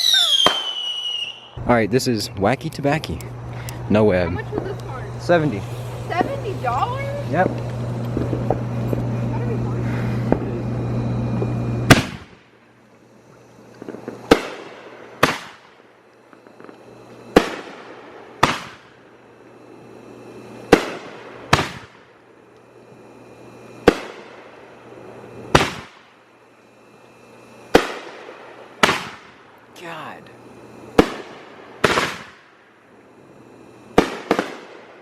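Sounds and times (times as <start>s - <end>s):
firework shells bursting and crackling: 0.0s - 1.6s, 2.6s - 35.0s
low hum: 1.4s - 31.8s
firework launch thumps: 5.6s - 9.2s, 11.3s - 12.5s, 20.7s - 22.0s, 25.5s - 26.1s.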